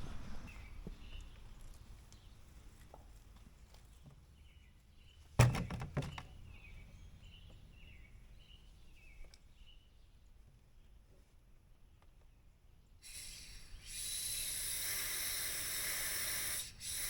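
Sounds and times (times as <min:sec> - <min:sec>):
clatter of sharp knocks: 0:05.4 - 0:06.4
faint bird chirps: 0:13.0 - 0:17.0.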